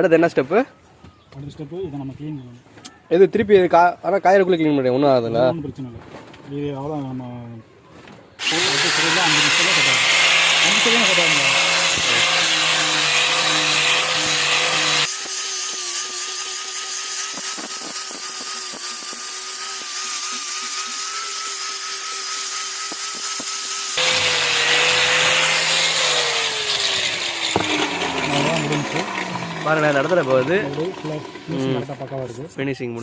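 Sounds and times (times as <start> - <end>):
power sander whining: 8.4 - 32.2.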